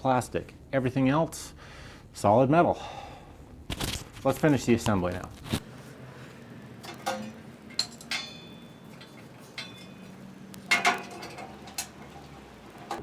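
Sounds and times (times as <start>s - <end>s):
metal grill parts clinking: 6.3s - 13.0s.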